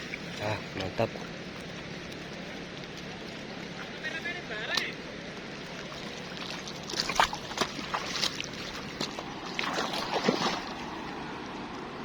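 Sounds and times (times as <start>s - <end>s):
water splashing: 0.0s - 11.7s
fish thrashing at surface: 5.7s - 10.9s.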